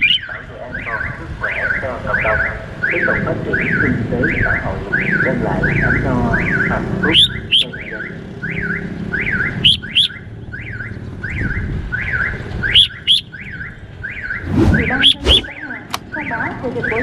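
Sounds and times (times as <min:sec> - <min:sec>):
sharp rising whistles: 0:14.3 - 0:15.5.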